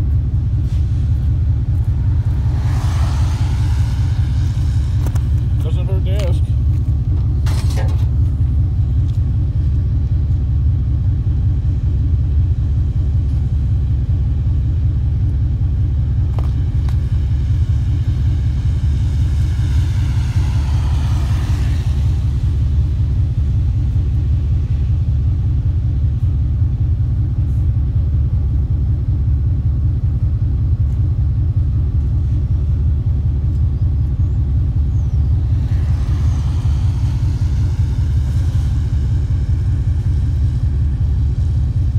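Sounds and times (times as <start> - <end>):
vehicle engine and road noise: 0.0 - 41.9
higher-pitched noise swell: 0.7 - 7.1, 16.8 - 25.8, 34.8 - 41.9.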